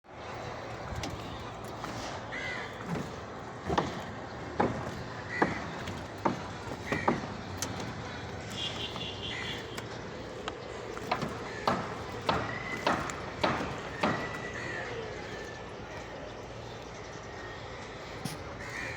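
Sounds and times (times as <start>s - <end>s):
steady background noise: 0.0s - 18.9s
sharp knocks and bangs: 1.1s - 10.0s, 10.9s - 14.6s.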